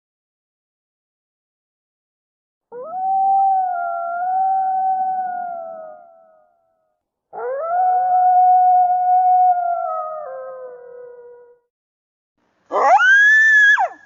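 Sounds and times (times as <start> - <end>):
wolf-like howls: 7.4 - 11.6, 12.7 - 14.0.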